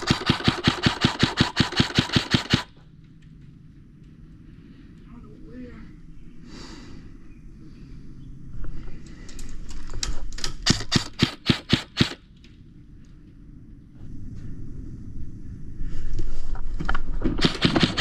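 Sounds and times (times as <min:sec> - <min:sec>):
airsoft gun shots: 0:00.0 - 0:02.8, 0:10.6 - 0:12.2, 0:17.3 - 0:18.0.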